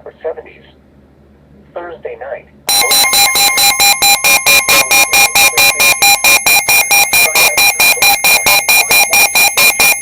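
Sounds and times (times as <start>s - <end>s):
radio alert alarm beeping: 2.7s - 10.0s.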